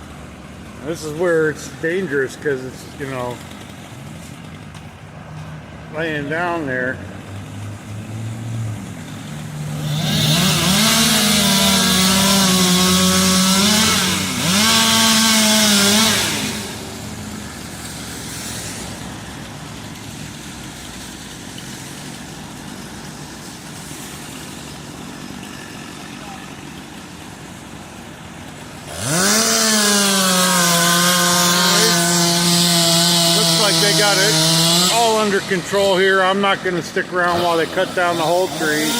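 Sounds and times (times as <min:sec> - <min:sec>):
chainsaw revving: 0:00.6 - 0:38.9
quiet steady engine: 0:16.1 - 0:29.4.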